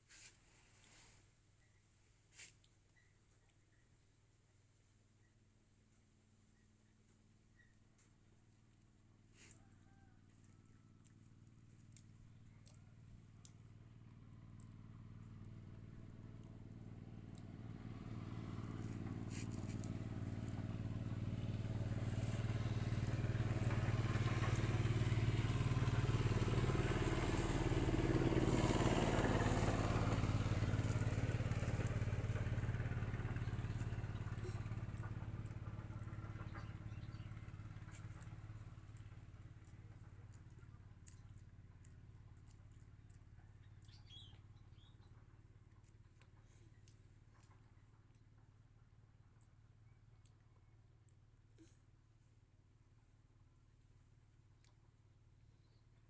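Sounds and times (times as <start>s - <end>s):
vehicle engine passing by: 13.8s - 45.8s.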